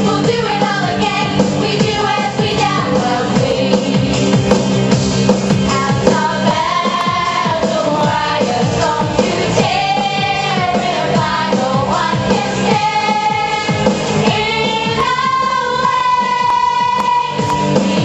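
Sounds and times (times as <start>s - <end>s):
people singing: 0.0s - 4.7s, 5.6s - 18.0s
pop backing track: 0.0s - 18.0s.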